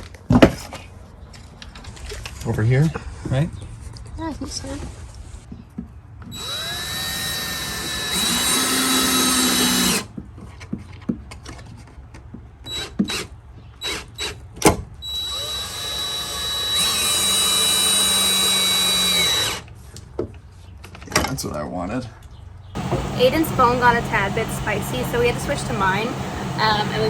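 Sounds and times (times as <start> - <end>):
power drill running: 6.3 - 10.1, 15.0 - 19.7, 22.8 - 27.0.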